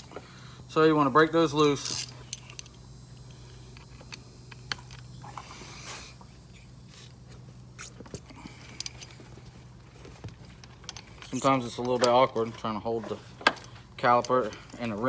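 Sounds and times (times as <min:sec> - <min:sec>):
steady low hum: 0:00.0 - 0:15.0
wrench clicking and scraping: 0:01.6 - 0:05.6.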